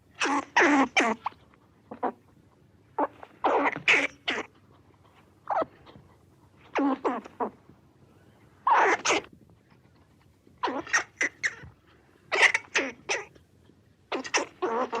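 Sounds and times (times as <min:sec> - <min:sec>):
animal's short harsh calls: 0:03.0 - 0:04.6, 0:08.6 - 0:09.3, 0:10.6 - 0:11.7, 0:12.3 - 0:13.3, 0:14.1 - 0:15.0.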